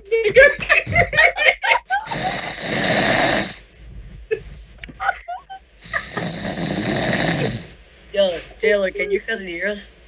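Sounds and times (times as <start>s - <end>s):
man snoring: 2.0s - 3.6s, 5.8s - 7.8s.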